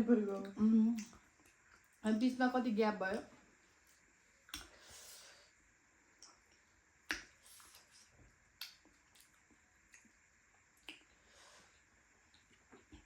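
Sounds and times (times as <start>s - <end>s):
mouth clicks and smacks eating: 0.3s - 2.0s, 4.4s - 4.8s, 6.2s - 11.2s
soft squish: 6.2s - 11.2s.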